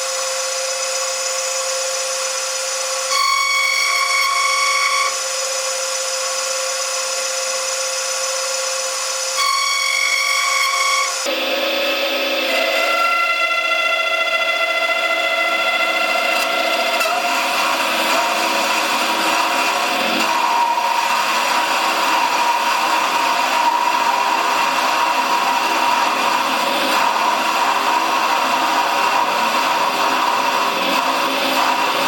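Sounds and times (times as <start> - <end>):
machine tool cutting: 0.8 - 32.0
steady tone: 9.7 - 32.0.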